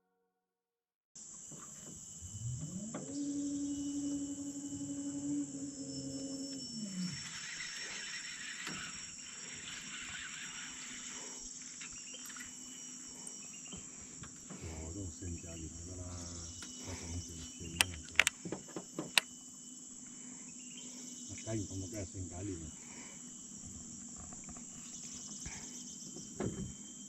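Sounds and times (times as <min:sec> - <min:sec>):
insects buzzing: 0:01.2 - 0:27.0
sharp clicks or knocks: 0:17.8 - 0:18.4.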